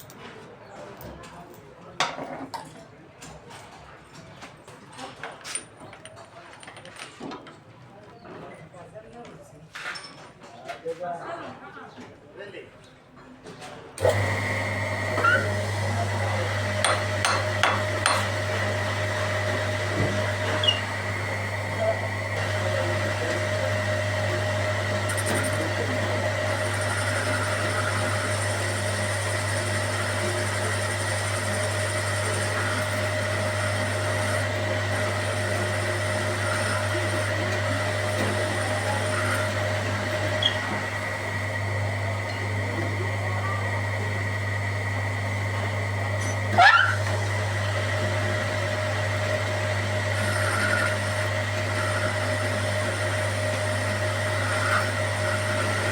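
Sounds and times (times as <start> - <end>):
steady machine hum: 14.0 - 55.9
gliding squeak: 15.2 - 15.5, 20.4 - 20.9, 40.4 - 40.8, 46.2 - 47.1.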